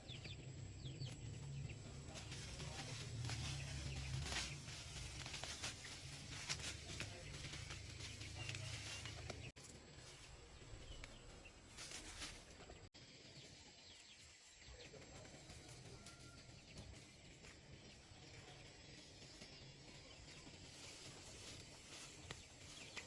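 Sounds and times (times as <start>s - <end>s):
soft rustles: 1.0s - 12.9s, 20.3s - 23.0s.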